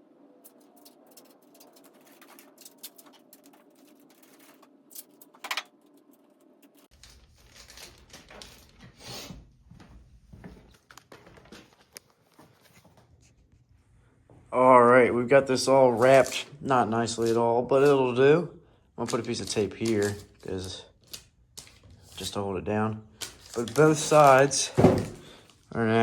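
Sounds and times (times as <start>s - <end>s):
paper crackle: 0.3s - 9.1s, 19.0s - 22.4s, 23.2s - 25.7s
paper and tape rustling: 0.4s - 9.4s, 15.8s - 18.2s, 19.0s - 22.4s, 23.1s - 25.7s.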